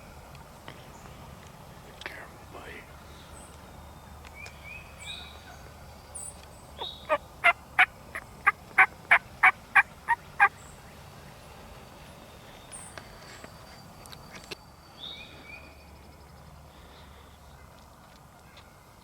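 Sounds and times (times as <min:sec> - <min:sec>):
turkey yelps: 0:06.8 - 0:10.5.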